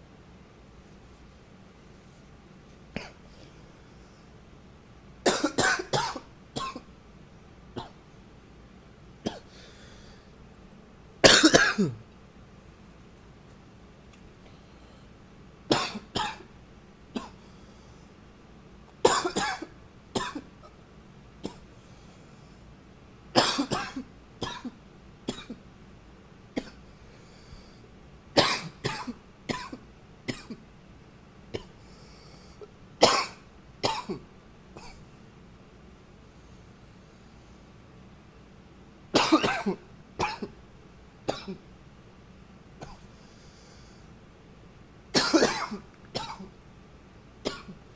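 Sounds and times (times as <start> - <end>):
man coughing: 5.2 - 6.8, 11.2 - 12.0, 15.7 - 16.5, 19.0 - 20.5, 23.4 - 24.7, 28.4 - 30.6, 33.0 - 34.2, 39.2 - 40.6, 41.3 - 41.6, 45.2 - 46.5, 47.5 - 47.8.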